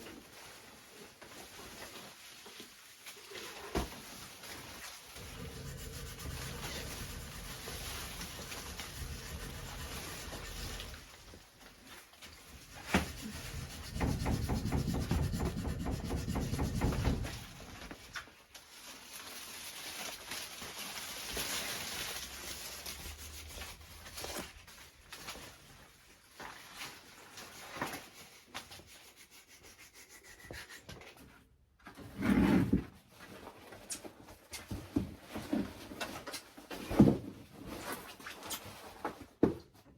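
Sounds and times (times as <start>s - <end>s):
pots scraping on floor: 3.1s - 18.3s, 31.8s - 34.0s
knocks: 12.9s - 17.6s.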